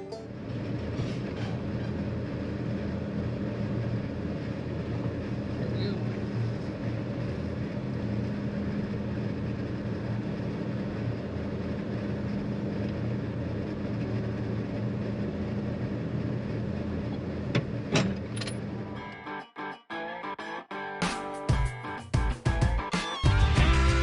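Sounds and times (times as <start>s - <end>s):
music: 0.0s - 0.4s, 19.0s - 24.0s
diesel engine droning: 0.0s - 19.1s, 23.3s - 24.0s.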